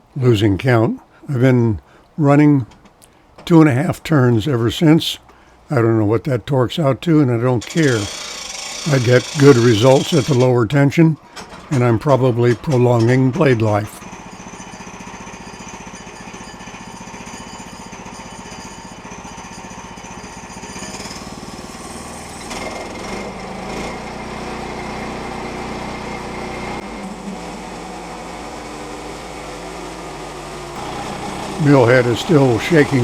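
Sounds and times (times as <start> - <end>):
small petrol engine running: 7.6 - 10.4, 11.3 - 11.8, 14.0 - 33.0
rattling vibration of mill head: 7.6 - 10.6, 11.2 - 25.8, 30.6 - 33.0.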